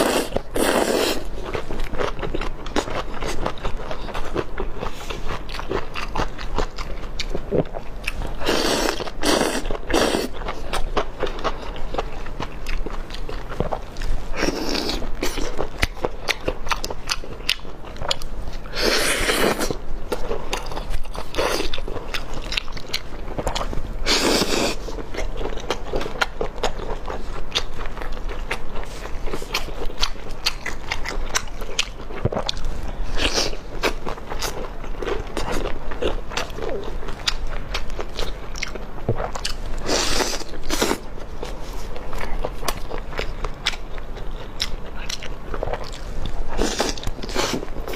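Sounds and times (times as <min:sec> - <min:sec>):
person chewing crispy food: 0:00.0 - 0:47.9.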